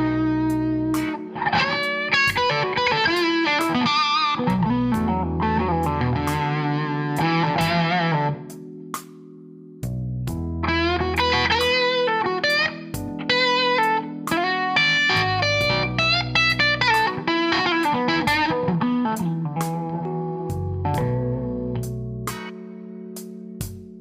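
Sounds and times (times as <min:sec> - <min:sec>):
backing track drums and bass: 0:00.0 - 0:03.8, 0:04.5 - 0:06.6, 0:09.8 - 0:11.8, 0:15.0 - 0:17.2, 0:20.5 - 0:22.5, 0:23.6 - 0:24.0
electric guitar blues lead: 0:00.0 - 0:08.8, 0:10.4 - 0:23.1.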